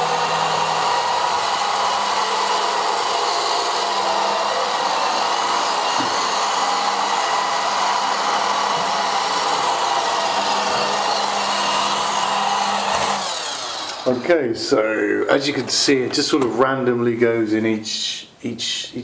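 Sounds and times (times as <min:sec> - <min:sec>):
robotic vacuum cleaner whirring: 0:00.0 - 0:14.3.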